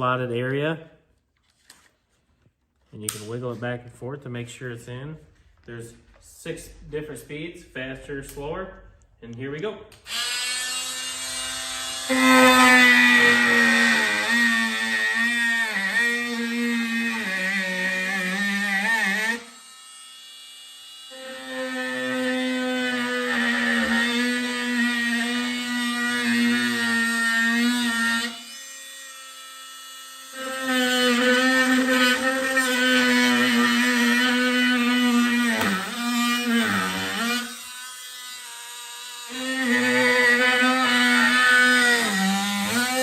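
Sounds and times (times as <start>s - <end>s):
oscillating multi-tool buzzing: 10.0s - 43.0s.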